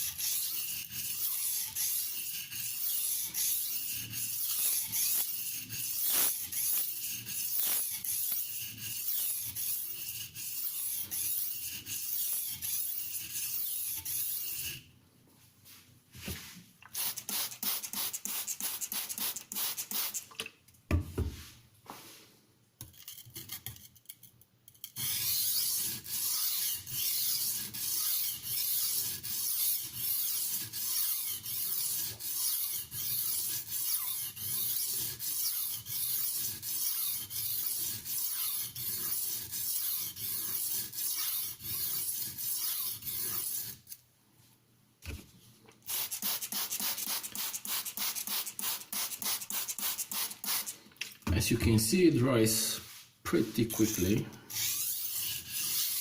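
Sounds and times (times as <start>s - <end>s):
knife blade scraping on whetstone: 0.0s - 14.9s, 24.8s - 44.0s, 52.8s - 53.0s, 53.7s - 56.0s.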